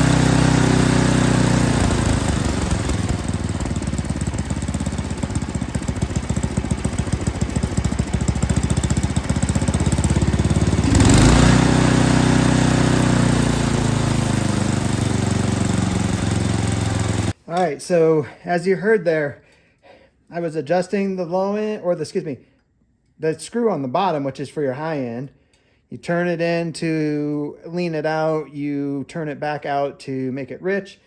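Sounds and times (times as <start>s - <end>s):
snowblower engine running: 0.0s - 17.4s.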